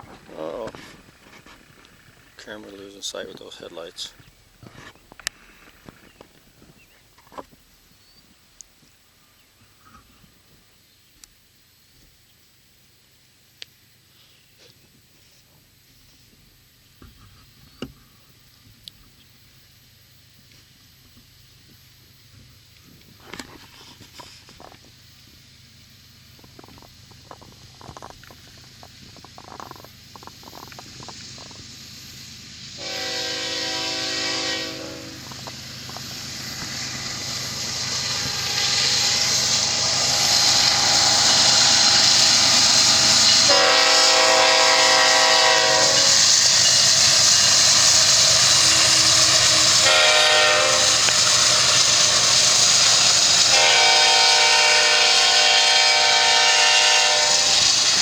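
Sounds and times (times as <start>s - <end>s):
train rushing on rails: 0.0s - 6.5s, 25.2s - 58.0s
locomotive horn blasts: 32.8s - 35.3s, 38.0s - 46.2s, 48.4s - 52.4s, 53.4s - 58.0s.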